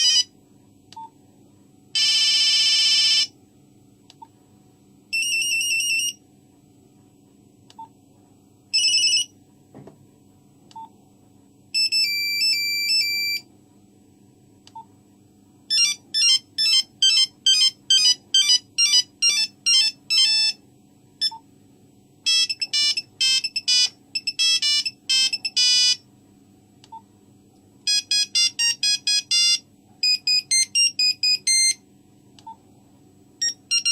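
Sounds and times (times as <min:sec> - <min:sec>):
mobile phone monophonic ringtone: 0:02.0 - 0:03.3, 0:05.1 - 0:06.2, 0:08.8 - 0:09.3, 0:15.7 - 0:20.6, 0:22.3 - 0:26.0, 0:27.9 - 0:31.8, 0:33.4 - 0:33.9.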